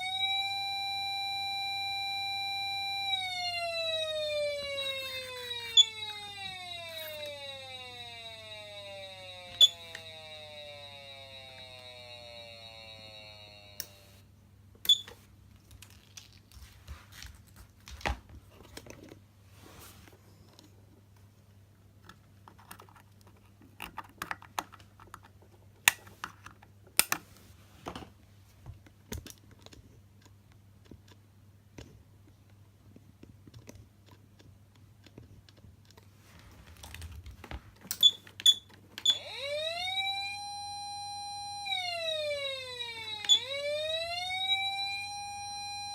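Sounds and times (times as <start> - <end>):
electronic siren: 0.0 - 14.3, 38.5 - 45.9
steady electrical hum: 0.0 - 23.1.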